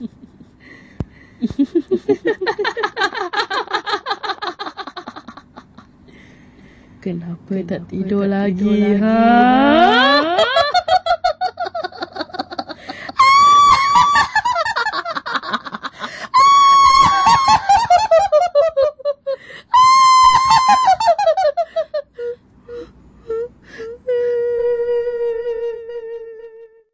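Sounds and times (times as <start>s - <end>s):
shrill ghost cackling laugh: 1.5s - 5.9s, 8.8s - 22.2s.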